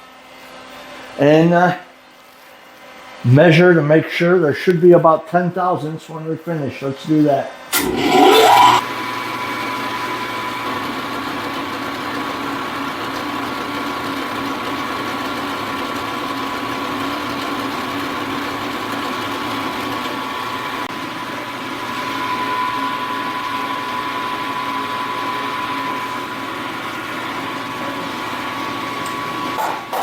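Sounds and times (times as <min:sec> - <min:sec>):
milling machine humming: 0:07.7 - 0:30.0.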